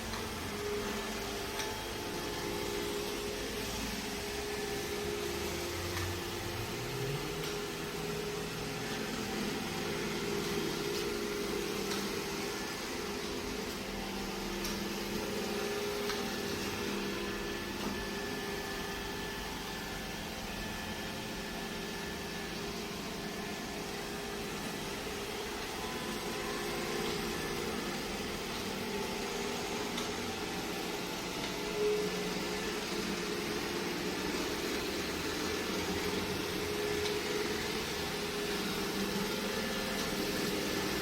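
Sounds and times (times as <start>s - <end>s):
robot vacuum whirring: 0.0s - 41.0s.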